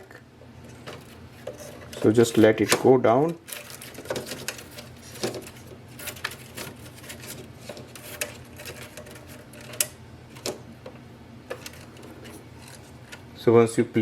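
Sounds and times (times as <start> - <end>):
plastic parts clicking: 0.8 - 10.6.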